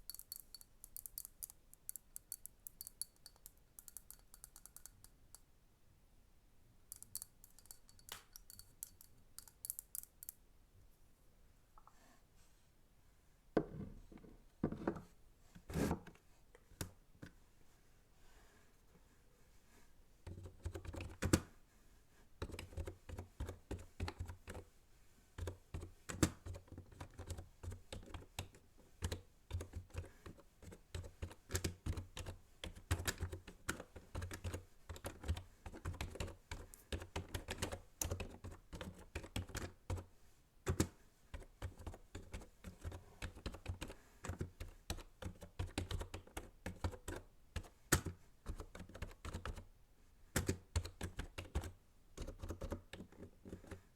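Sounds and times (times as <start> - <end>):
computer keyboard typing: 0.1 - 5.2, 30.9 - 39.7, 41.6 - 47.2.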